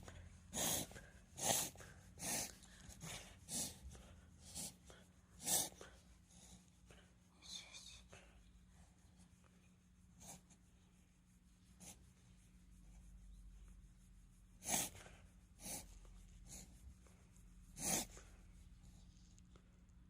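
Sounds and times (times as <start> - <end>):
dog sneezing and snorting: 0.6 - 2.6, 14.6 - 15.0, 17.8 - 18.2.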